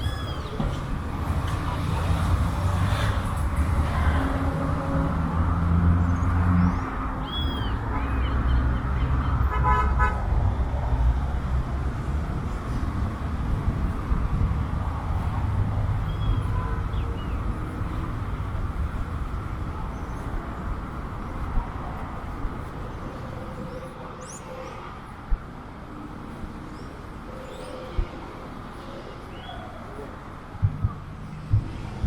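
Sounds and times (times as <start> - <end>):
road traffic rumble: 0.0 - 32.0
sharp thumps: 30.6 - 32.0.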